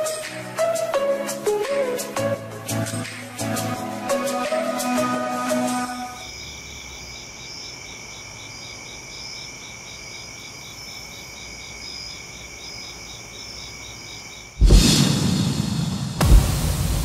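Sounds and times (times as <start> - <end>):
crickets chirping: 5.9 - 14.6.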